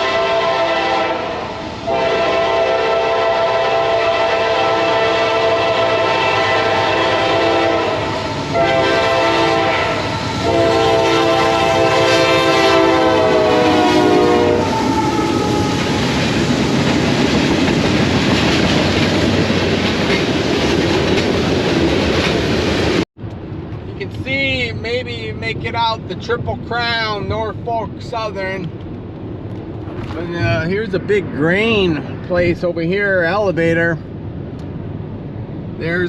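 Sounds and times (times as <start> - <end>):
train air horn blast: 0.0 - 16.1
train rumbling and clattering by: 0.0 - 36.0.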